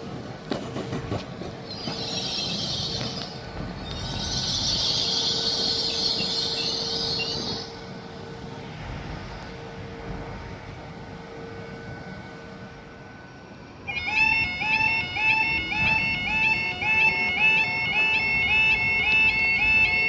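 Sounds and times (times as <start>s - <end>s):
train wheels knocking: 0.0s - 7.7s, 13.9s - 20.0s
train rumble: 0.0s - 20.0s
high wheel squeal: 1.6s - 7.9s.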